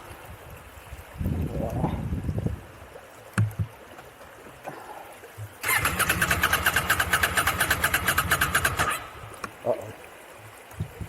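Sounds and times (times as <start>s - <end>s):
motorcycle engine cranking: 5.6s - 9.0s.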